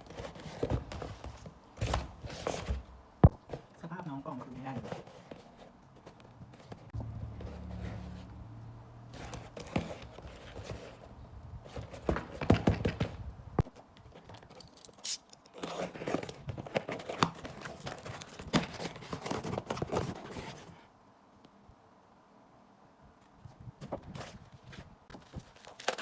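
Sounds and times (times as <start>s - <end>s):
packaging rustling and tearing: 25.2s - 26.0s.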